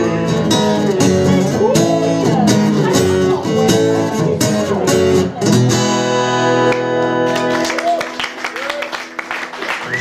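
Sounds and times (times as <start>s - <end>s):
guitar strummed in chords: 0.0s - 7.5s.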